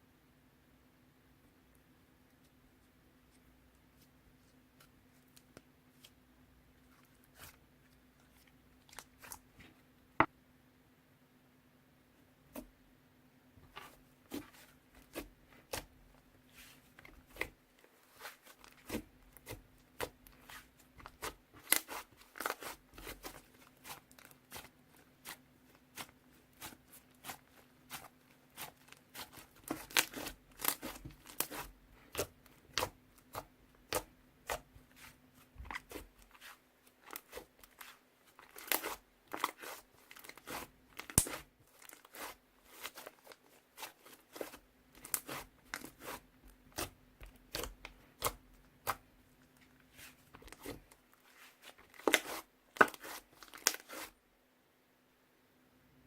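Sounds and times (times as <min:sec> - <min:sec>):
faint steady hum: 0:00.0 - 0:56.0
slime crackling and popping: 0:20.4 - 0:33.0, 0:35.6 - 0:49.0.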